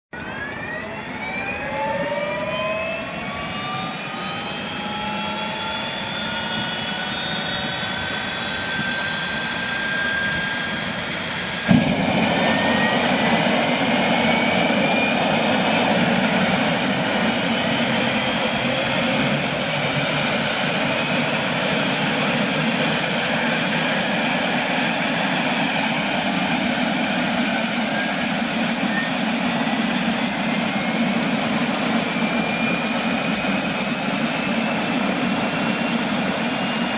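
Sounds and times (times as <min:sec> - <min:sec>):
turbine engine starting up: 0:00.2 - 0:36.9
sharp pop: 0:11.7 - 0:12.6.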